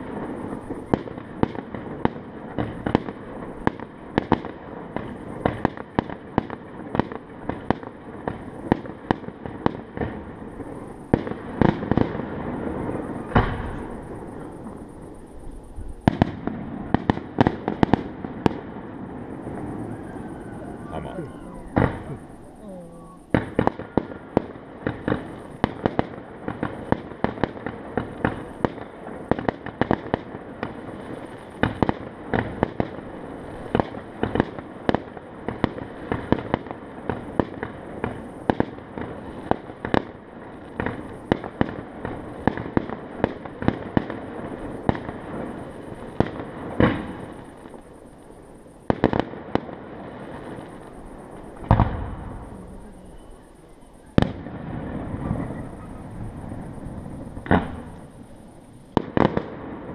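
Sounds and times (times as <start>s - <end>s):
fireworks bangs and pops: 0.0s - 20.1s, 20.7s - 59.9s
continuous crackle: 0.0s - 59.9s
heavy firework bang: 13.2s - 14.1s, 19.6s - 22.4s, 51.6s - 53.3s, 54.1s - 58.2s.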